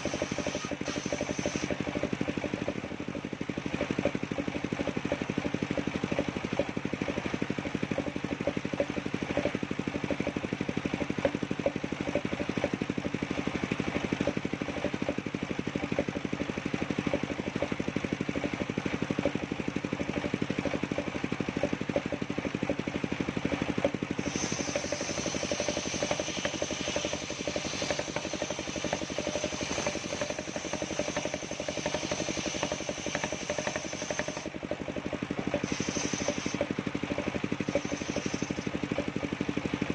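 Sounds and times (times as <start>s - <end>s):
sawmill engine running: 0.0s - 39.9s
high steady whine: 35.4s - 38.7s.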